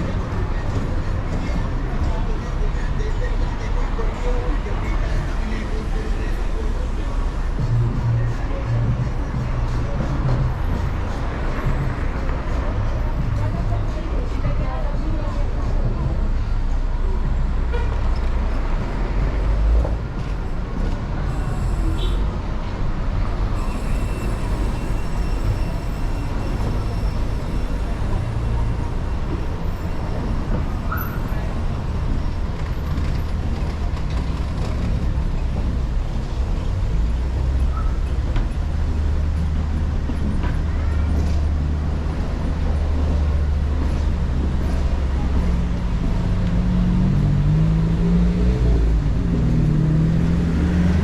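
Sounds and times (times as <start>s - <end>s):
vehicle engines passing: 0.0s - 51.0s.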